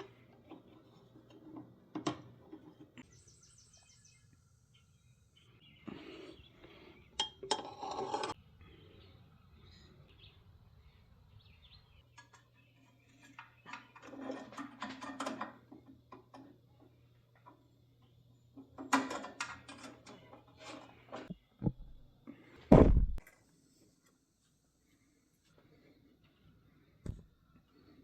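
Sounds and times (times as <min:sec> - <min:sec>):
clattering and knocking of tools: 0:00.0 - 0:03.0, 0:07.2 - 0:08.4, 0:12.0 - 0:17.6, 0:18.5 - 0:22.0
heavy thump: 0:22.7 - 0:23.2.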